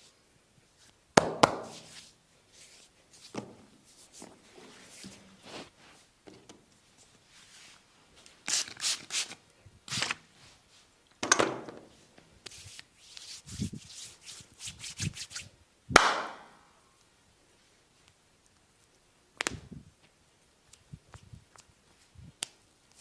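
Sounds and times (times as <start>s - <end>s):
hands rubbing on bare skin: 0.8s - 6.1s, 6.9s - 10.9s, 11.9s - 15.5s
sharp smack: 16.0s - 16.5s.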